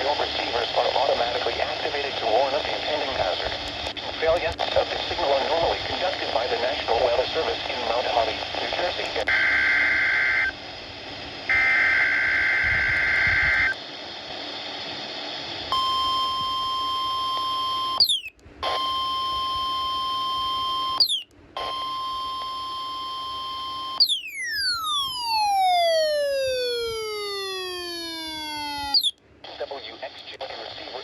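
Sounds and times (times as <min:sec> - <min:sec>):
radio static: 0:00.0 - 0:10.6, 0:25.3 - 0:31.0
warning alarm tone: 0:15.8 - 0:29.1
warbling data screech: 0:18.0 - 0:18.8, 0:21.0 - 0:21.2, 0:23.9 - 0:29.2
buzzy tone gliding down: 0:24.0 - 0:29.1.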